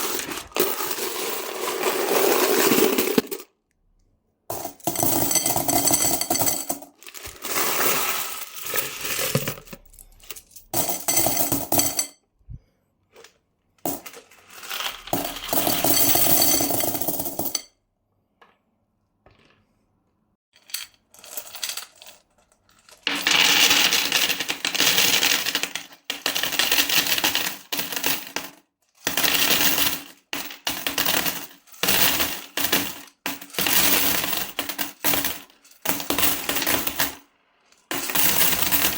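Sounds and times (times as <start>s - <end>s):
coins pouring and jingling: 0.0s - 3.5s, 4.5s - 12.1s, 13.9s - 17.6s, 23.0s - 37.2s, 37.9s - 38.9s.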